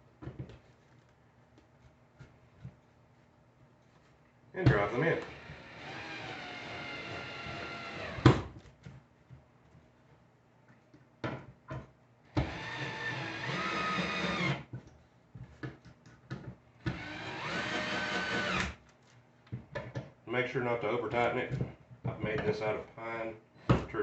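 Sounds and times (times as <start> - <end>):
drill driving screws into wood: 4.9 - 8.5, 12.4 - 14.7, 16.9 - 18.8.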